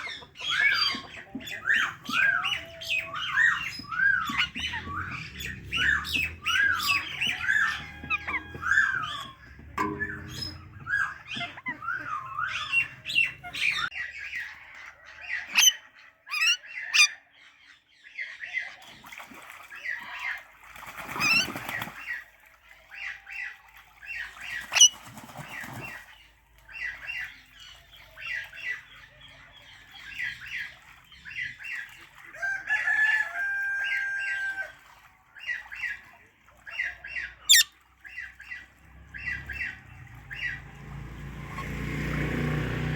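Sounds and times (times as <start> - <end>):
parrots chirping: 0.0 - 14.0, 15.5 - 17.2, 37.5 - 37.7.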